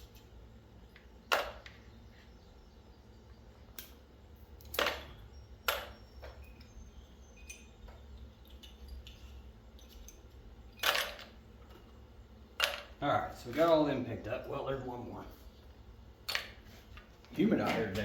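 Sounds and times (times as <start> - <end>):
low steady hum: 0.0 - 18.0
copper tubing clinking: 7.4 - 11.8.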